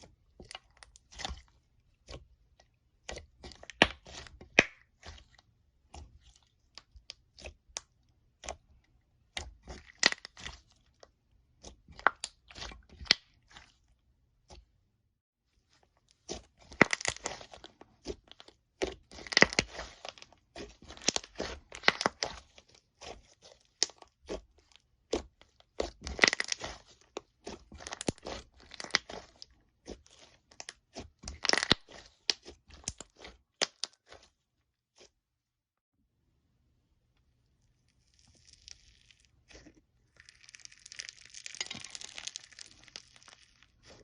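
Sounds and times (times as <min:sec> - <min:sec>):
slime clicking and crackling: 0:09.3 - 0:11.0, 0:16.2 - 0:34.2, 0:38.0 - 0:44.0.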